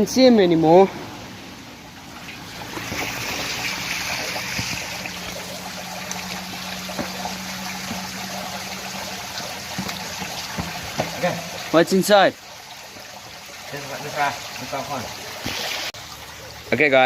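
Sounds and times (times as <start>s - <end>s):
water rushing in a drain: 0.0s - 17.0s
small knocks: 9.7s - 11.5s.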